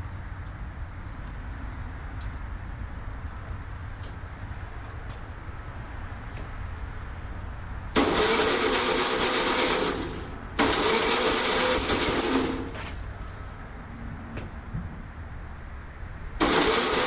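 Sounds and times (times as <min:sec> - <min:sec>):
starter motor cranking engine: 0:08.0 - 0:13.6, 0:16.4 - 0:17.0.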